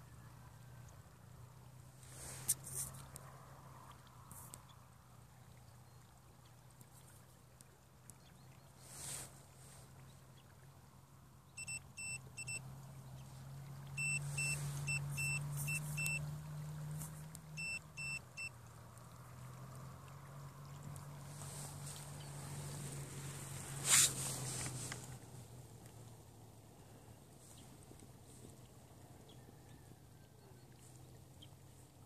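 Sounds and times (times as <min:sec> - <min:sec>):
short high electronic beeps: 0:11.6 - 0:12.6, 0:14.0 - 0:16.2, 0:17.6 - 0:18.5.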